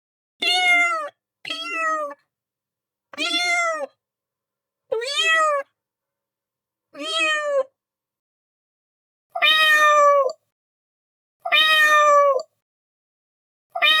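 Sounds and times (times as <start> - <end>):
cat meowing: 0.4 - 2.2, 3.2 - 4.0, 4.9 - 5.7, 7.0 - 7.7, 9.4 - 10.4, 11.4 - 12.5, 13.8 - 14.0.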